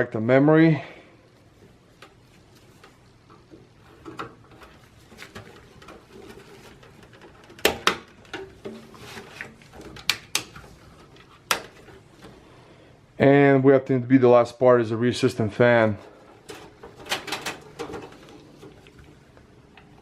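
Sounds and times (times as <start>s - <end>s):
handling rustle: 1.4s - 12.5s.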